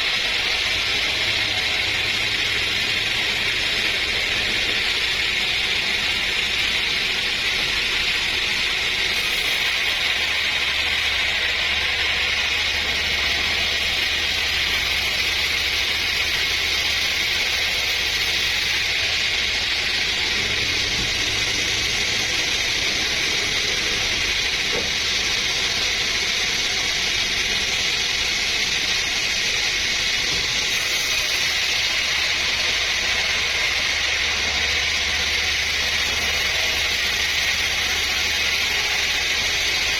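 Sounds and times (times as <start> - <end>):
sawmill saw hissing: 0.0 - 39.9.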